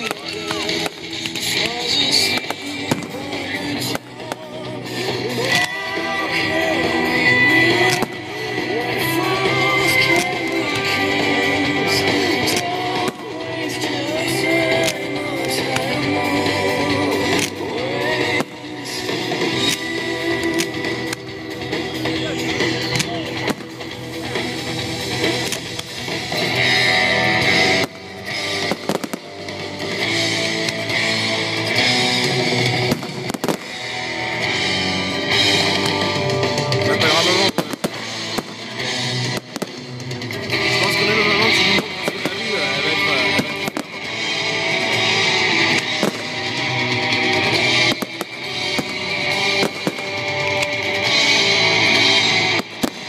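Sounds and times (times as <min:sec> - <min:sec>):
sharp cracks and bangs: 0:00.0 - 0:05.8, 0:07.6 - 0:08.7, 0:22.8 - 0:36.2, 0:37.0 - 0:53.0
rock music with electric guitar: 0:00.0 - 0:53.0.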